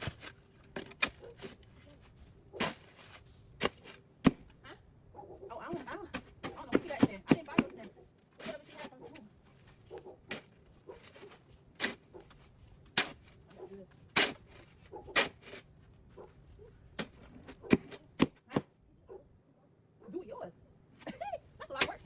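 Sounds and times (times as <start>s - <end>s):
snow shovel scraping snow: 0.0s - 4.1s, 8.4s - 13.4s, 14.0s - 15.7s.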